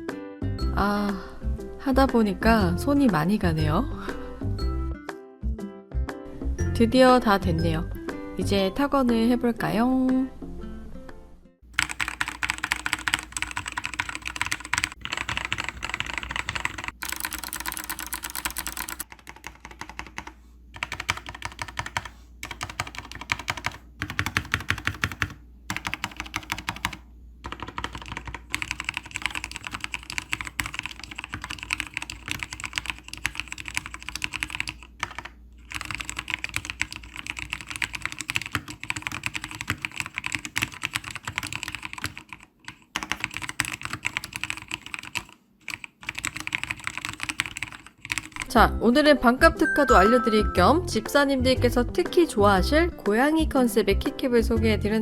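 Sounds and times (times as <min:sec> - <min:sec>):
mechanical keyboard typing: 0:11.8 - 0:48.5.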